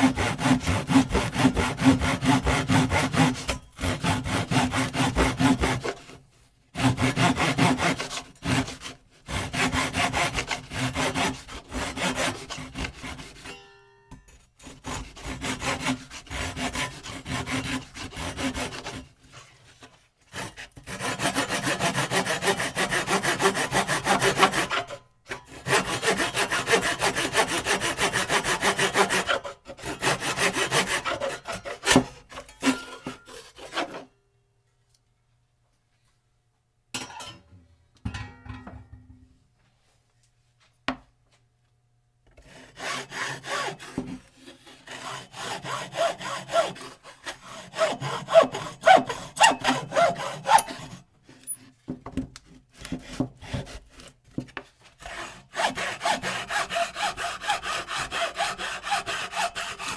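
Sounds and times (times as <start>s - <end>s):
hand saw cutting wood: 0.0s - 13.6s, 14.6s - 34.1s, 42.4s - 51.8s, 52.4s - 59.9s.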